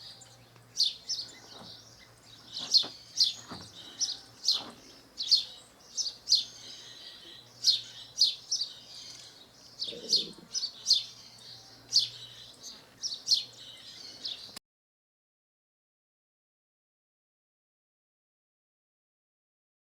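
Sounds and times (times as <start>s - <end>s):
sparrow chirping: 0.0s - 14.6s.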